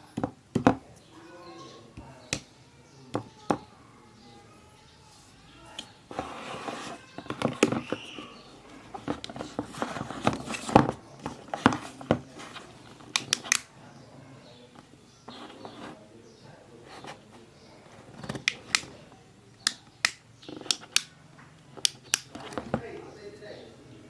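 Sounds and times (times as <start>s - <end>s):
sharp clicks and taps: 13.1s - 13.7s.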